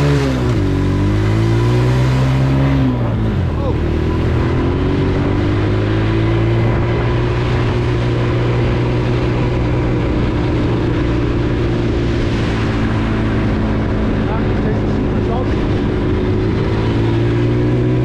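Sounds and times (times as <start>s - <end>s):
quad engine running: 0.0s - 18.0s.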